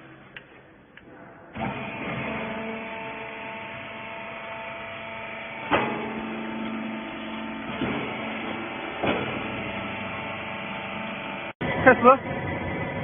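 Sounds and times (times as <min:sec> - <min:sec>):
baler motor and pump hum: 0:01.6 - 0:13.0
sharp metallic clunks: 0:05.6 - 0:06.8, 0:07.7 - 0:09.7.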